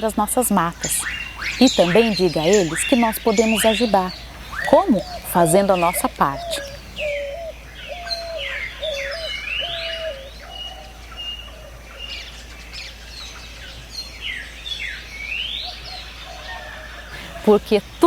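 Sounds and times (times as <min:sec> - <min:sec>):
quick high bird chirps: 0:00.7 - 0:10.3
low whistled bird note: 0:00.8 - 0:10.3.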